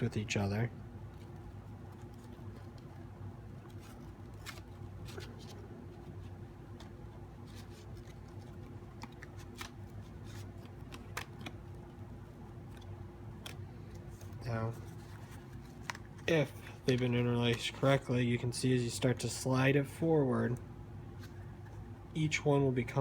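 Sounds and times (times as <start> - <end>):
cardboard rustling and clicking: 6.7 - 11.7.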